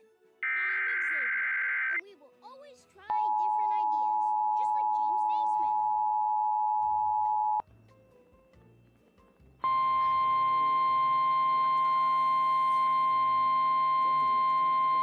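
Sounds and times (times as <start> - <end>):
steady high alarm tone: 0.4 - 2.0, 3.1 - 7.6, 9.7 - 15.0
two-tone attention signal: 0.4 - 2.0, 3.1 - 7.6, 9.7 - 15.0.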